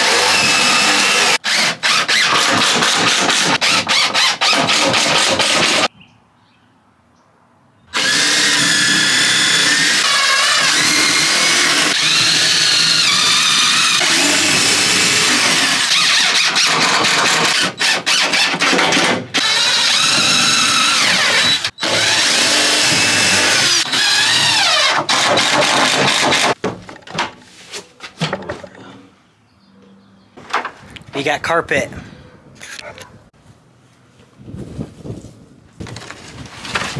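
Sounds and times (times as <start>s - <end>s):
power drill running: 0.0s - 5.9s, 8.0s - 26.6s.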